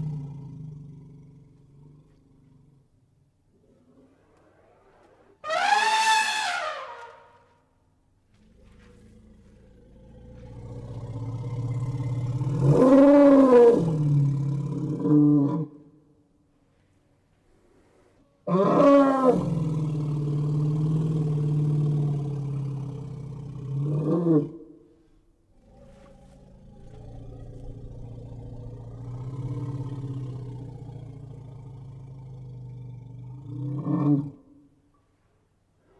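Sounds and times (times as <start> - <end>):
elephant rumbling and bellowing: 25.6 - 34.2.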